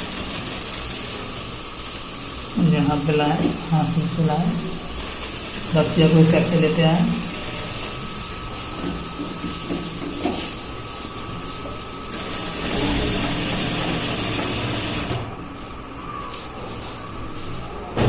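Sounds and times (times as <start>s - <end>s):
sewing machine running: 0.0s - 1.6s, 12.1s - 15.4s.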